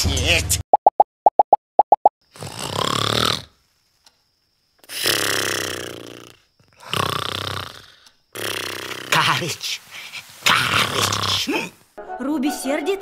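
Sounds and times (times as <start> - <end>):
person snoring: 2.3 - 3.6, 4.8 - 9.4, 10.6 - 11.6.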